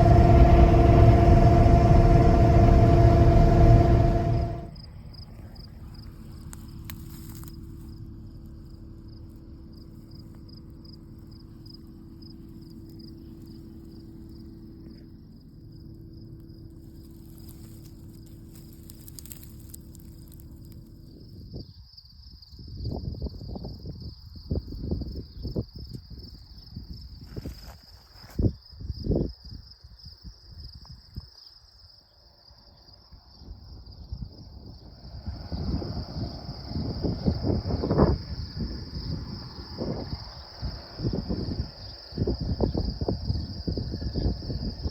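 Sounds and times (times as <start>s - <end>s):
steady tone: 0.0s - 4.7s
low rumbling bumps: 0.0s - 4.9s
faint low hum: 0.0s - 6.7s
insects trilling: 30.0s - 44.9s.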